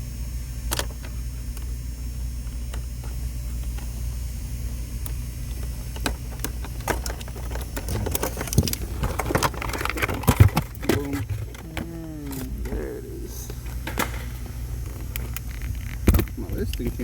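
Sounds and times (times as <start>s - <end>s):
steady low hum: 0.0s - 17.0s
clicks and knocks of parts handled: 5.5s - 12.8s, 13.5s - 16.9s.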